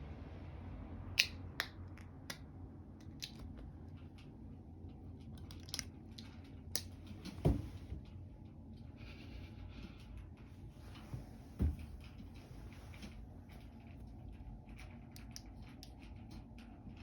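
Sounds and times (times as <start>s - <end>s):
cats clicking and tapping on floor: 13.5s - 17.0s.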